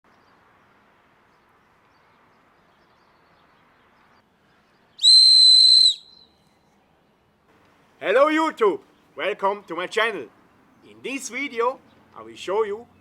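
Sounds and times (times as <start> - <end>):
faint outdoor background: 0.0 - 13.0
wooden whistle blast: 5.0 - 6.4.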